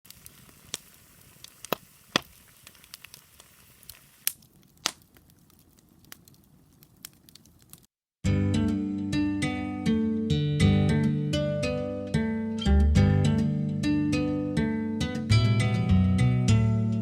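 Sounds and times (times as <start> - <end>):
bonfire crackling and popping: 0.0 - 7.9
acoustic guitar music: 8.3 - 17.0.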